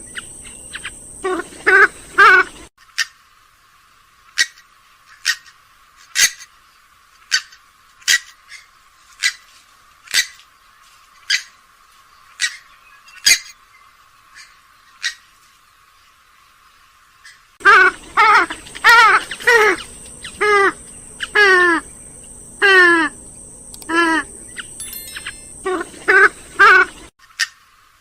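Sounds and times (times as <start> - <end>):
bird giving sharp calls: 17.6 - 23.2.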